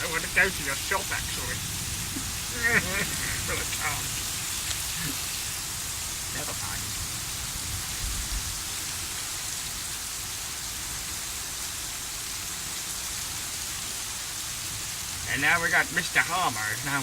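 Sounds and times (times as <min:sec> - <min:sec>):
low thunder rumble: 0:00.0 - 0:08.9
heavy rain falling: 0:00.0 - 0:17.0.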